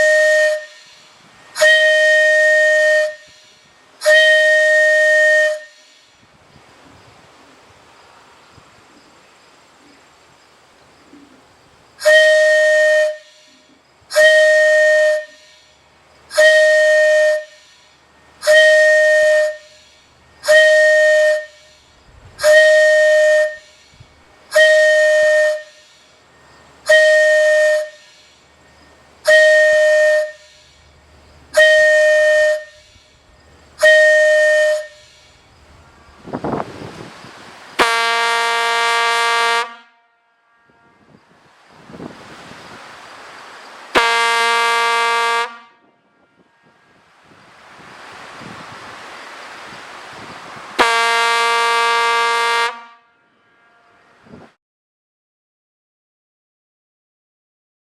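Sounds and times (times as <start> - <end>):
steam whistle blasts: 0.0 - 6.3, 12.0 - 37.2, 37.8 - 42.1, 43.9 - 47.5, 50.2 - 54.6
rush of air: 32.4 - 37.8, 41.0 - 44.0, 46.6 - 50.8.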